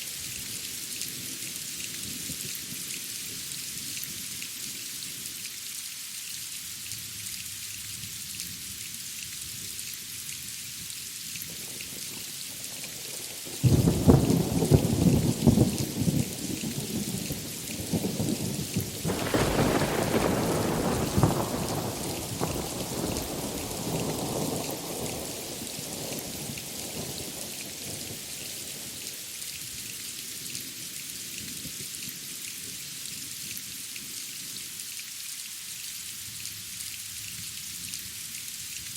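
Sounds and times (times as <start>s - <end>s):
steady rain hissing: 0.0s - 38.9s
thunder crackling and rumbling: 13.6s - 27.8s.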